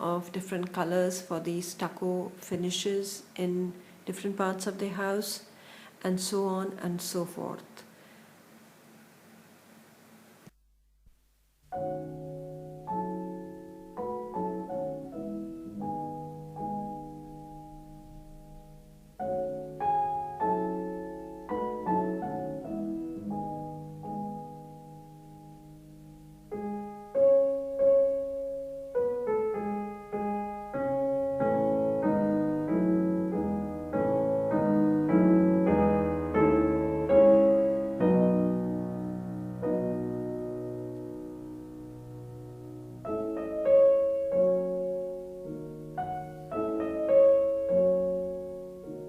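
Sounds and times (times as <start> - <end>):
piano music: 11.7 - 49.0.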